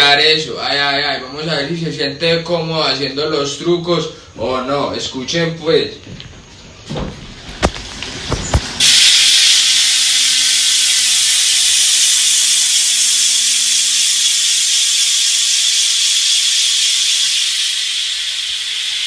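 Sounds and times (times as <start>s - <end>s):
bicycle freewheel ratchet buzzing: 8.5s - 19.0s.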